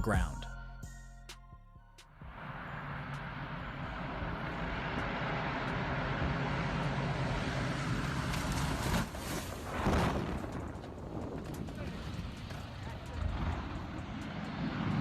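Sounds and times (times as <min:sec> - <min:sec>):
plane engine roar: 0:02.1 - 0:15.0
wind noise on microphone: 0:08.2 - 0:15.0.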